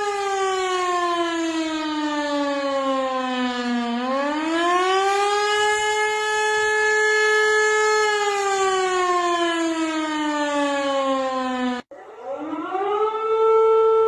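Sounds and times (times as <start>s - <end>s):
warning siren wailing: 0.0s - 14.0s.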